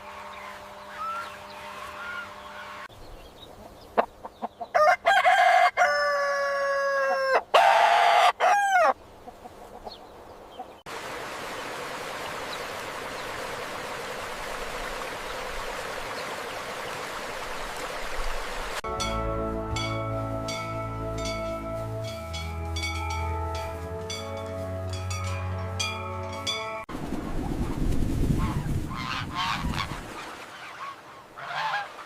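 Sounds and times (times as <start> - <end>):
rooster crowing: 4.8 - 9.0
steady rushing noise: 26.9 - 28.9.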